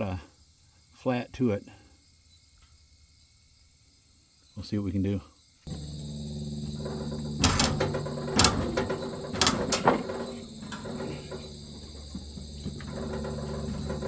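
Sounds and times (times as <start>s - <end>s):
sawmill engine running: 5.7s - 14.0s
sharp metallic knocks: 6.6s - 14.0s.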